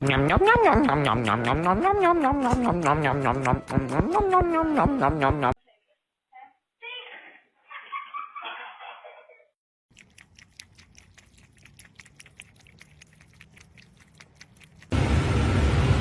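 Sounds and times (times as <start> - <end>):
animal crunching food: 0.0 - 5.0, 9.9 - 15.0.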